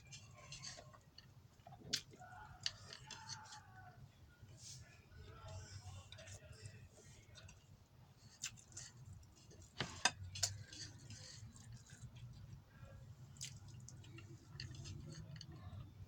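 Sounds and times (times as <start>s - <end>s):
low steady hum: 0.0s - 16.0s
wet chewing: 0.1s - 3.8s, 8.2s - 15.9s.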